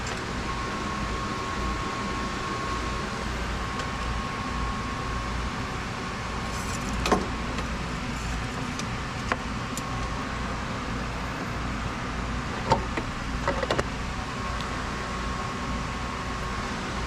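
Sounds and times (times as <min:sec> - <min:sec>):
steady mechanical hum: 0:00.0 - 0:17.0.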